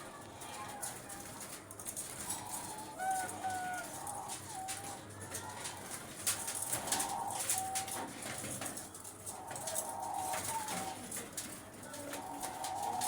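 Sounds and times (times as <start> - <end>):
doves cooing: 6.7 - 8.4, 9.3 - 13.0.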